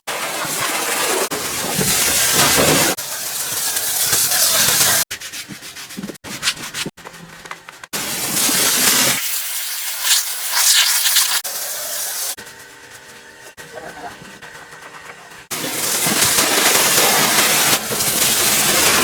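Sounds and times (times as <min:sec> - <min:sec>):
pressure washer spraying: 0:00.1 - 0:05.0, 0:08.0 - 0:12.4, 0:15.5 - 0:19.0.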